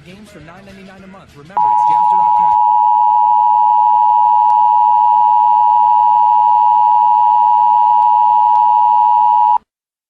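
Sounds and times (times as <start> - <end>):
electronic emergency attention tone: 1.6 - 9.6.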